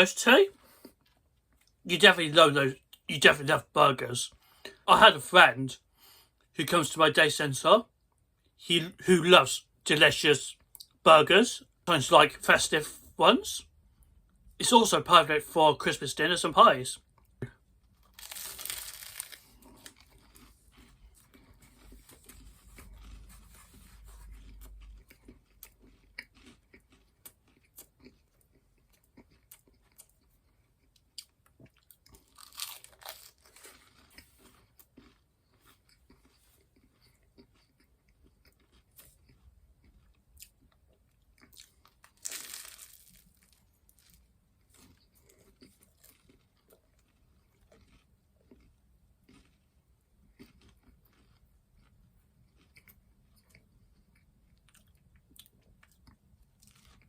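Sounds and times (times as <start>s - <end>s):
person chewing food: 17.1s - 57.0s.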